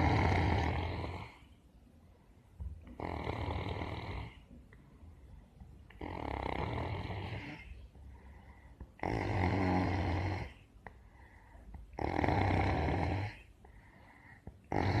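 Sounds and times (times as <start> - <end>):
heavy snoring: 0.0 - 1.5, 2.9 - 4.4, 5.9 - 7.8, 9.0 - 10.6, 11.9 - 13.5, 14.7 - 15.0.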